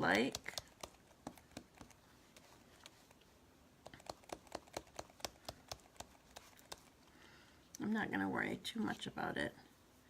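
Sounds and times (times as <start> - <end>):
sponge tapping on cardstock: 0.1 - 2.0, 3.8 - 6.9.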